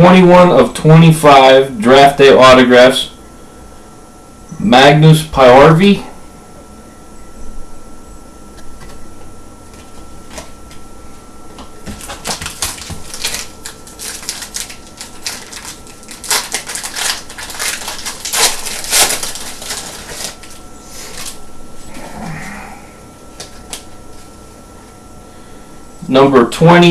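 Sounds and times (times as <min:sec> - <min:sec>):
card pack wrappers crinkling: 0:09.7 - 0:10.8, 0:11.6 - 0:21.4, 0:23.3 - 0:24.4.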